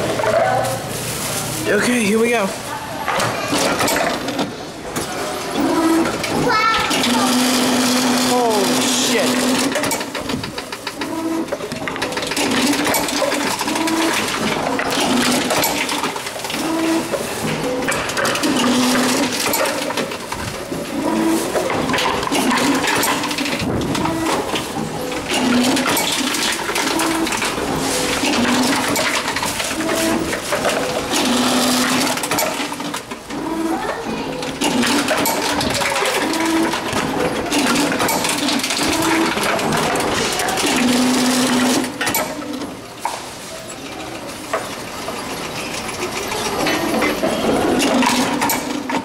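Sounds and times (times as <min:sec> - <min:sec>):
containers clicking and clattering: 0:03.0 - 0:33.2, 0:34.5 - 0:43.3
machine motor humming: 0:03.5 - 0:42.8.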